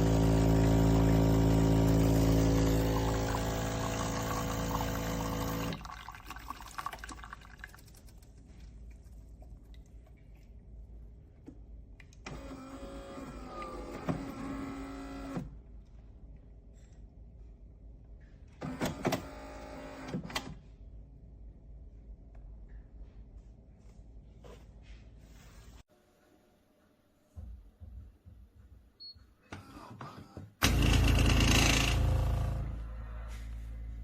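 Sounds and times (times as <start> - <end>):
espresso machine pump humming: 0.0 - 5.9
liquid and handling sounds: 5.7 - 11.7.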